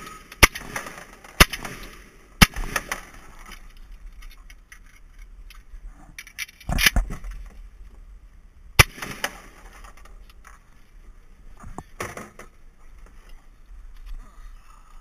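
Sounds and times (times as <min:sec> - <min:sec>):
loud sharp crack: 0:00.0 - 0:03.5, 0:08.8 - 0:10.0.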